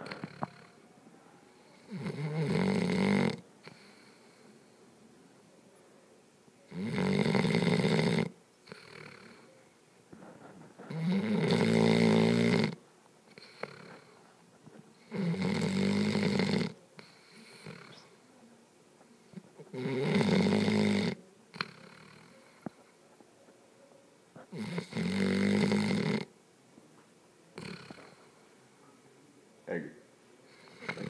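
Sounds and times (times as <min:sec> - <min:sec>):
puppy snoring: 0:00.0 - 0:00.8, 0:01.6 - 0:04.2, 0:06.7 - 0:09.5, 0:10.8 - 0:14.2, 0:15.0 - 0:18.2, 0:19.3 - 0:22.8, 0:24.4 - 0:26.3, 0:27.6 - 0:28.3, 0:30.5 - 0:31.0
faint breathing: 0:00.0 - 0:02.0, 0:03.6 - 0:05.2, 0:13.2 - 0:15.2, 0:17.0 - 0:18.4, 0:30.4 - 0:31.0.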